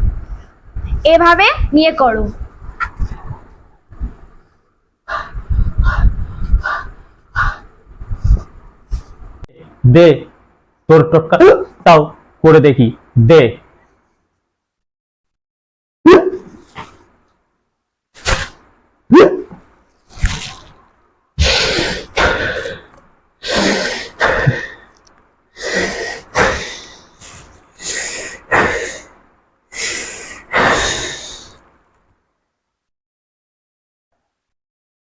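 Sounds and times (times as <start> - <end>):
man hiccuping: 16.1 - 16.6, 19.1 - 19.6.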